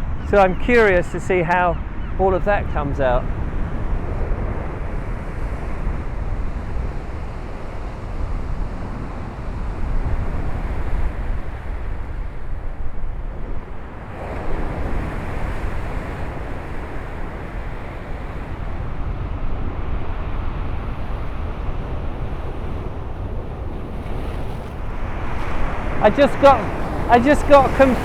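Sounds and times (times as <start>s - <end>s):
wind buffeting microphone: 0.0s - 28.0s
surf breaking on beach: 0.3s - 28.0s.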